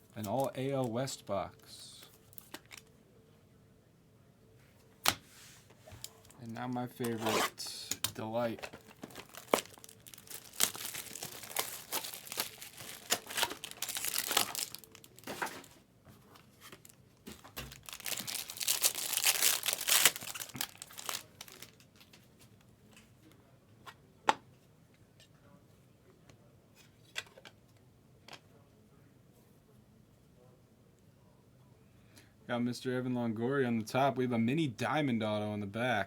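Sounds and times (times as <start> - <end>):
plastic wrapping crinkling and tearing: 2.3 - 2.9, 8.4 - 15.7, 16.6 - 22.2.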